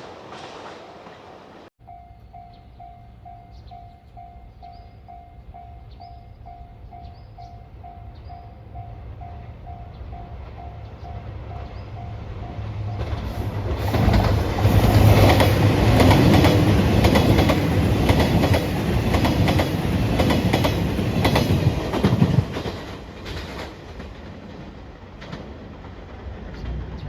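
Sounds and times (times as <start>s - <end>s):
train wheels clacking over rails: 0.0s - 1.7s, 12.9s - 27.0s
train rumble: 0.0s - 27.0s.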